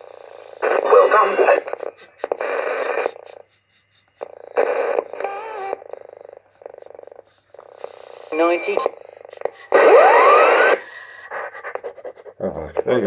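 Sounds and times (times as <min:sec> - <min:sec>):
radio hiss and crackle: 0:00.6 - 0:03.1, 0:08.3 - 0:10.8
rapid radio buzz: 0:00.6 - 0:03.4, 0:07.9 - 0:11.9
wavering radio whistle: 0:09.7 - 0:11.2.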